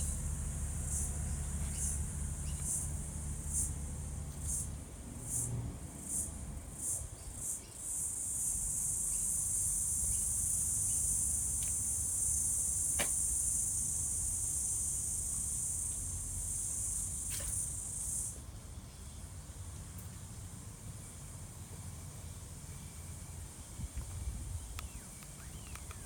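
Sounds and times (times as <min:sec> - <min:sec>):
low background rumble: 0:00.0 - 0:07.3
cricket chirping and trilling: 0:00.0 - 0:19.7
faint clicks: 0:24.8 - 0:26.0.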